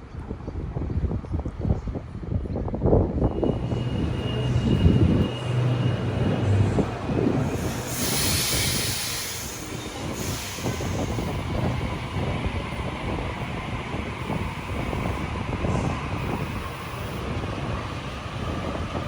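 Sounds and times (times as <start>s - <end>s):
electric train motor hum: 3.4s - 19.0s
high hiss: 3.8s - 11.6s.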